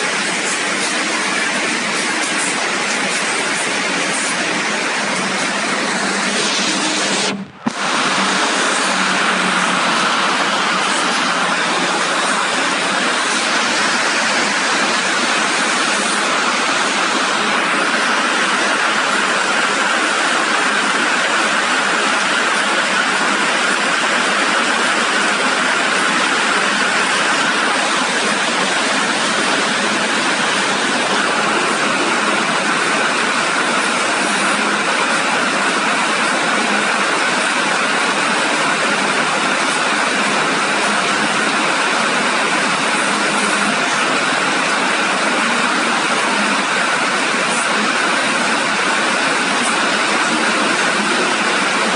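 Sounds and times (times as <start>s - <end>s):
steady rain falling: 0.0s - 51.9s.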